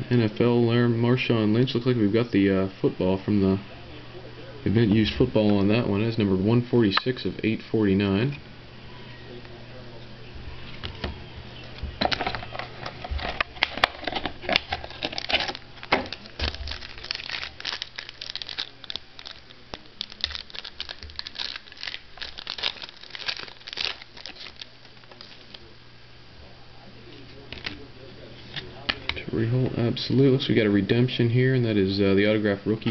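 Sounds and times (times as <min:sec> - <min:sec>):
wrapper crackling and rustling: 0:12.0 - 0:25.6.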